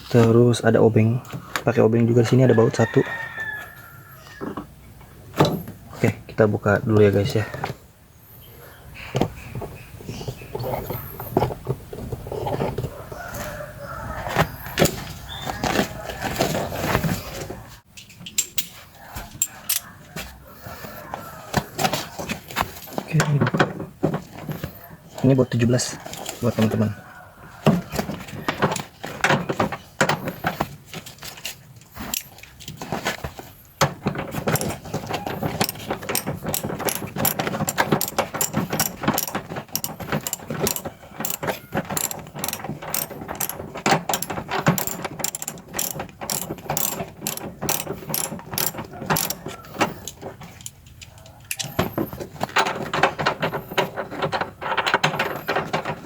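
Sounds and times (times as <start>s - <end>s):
ratchet wrench clicking: 34.5s - 34.8s, 35.6s - 49.4s.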